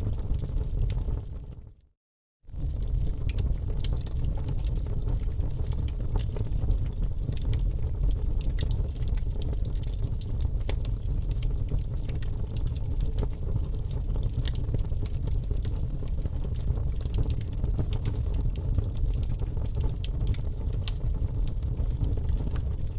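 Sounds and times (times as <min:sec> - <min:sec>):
open fire crackling: 0:00.0 - 0:01.7, 0:02.5 - 0:22.9.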